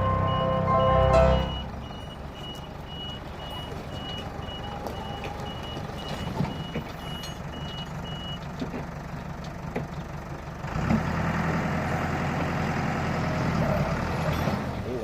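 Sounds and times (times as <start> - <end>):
high electronic beeps: 0.0 - 3.6
low engine hum: 0.0 - 15.0.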